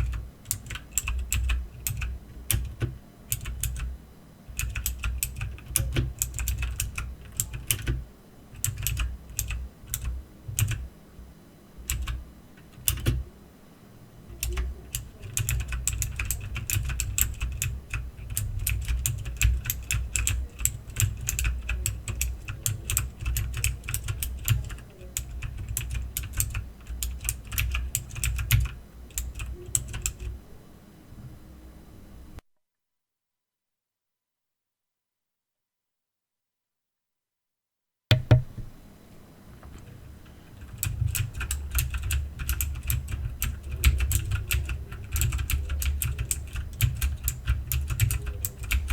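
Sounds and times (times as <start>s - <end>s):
mechanical keyboard typing: 0.0s - 3.9s, 4.5s - 8.0s, 8.6s - 10.9s, 11.8s - 13.2s, 14.3s - 30.4s, 39.8s - 48.9s.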